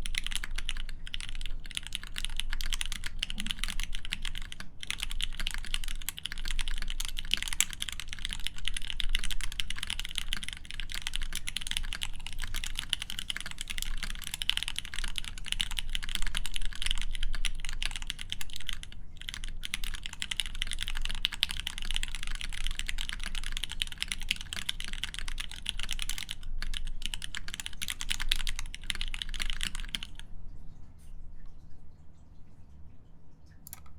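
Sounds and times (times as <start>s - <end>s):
mechanical keyboard typing: 0.0s - 30.2s, 33.7s - 33.9s.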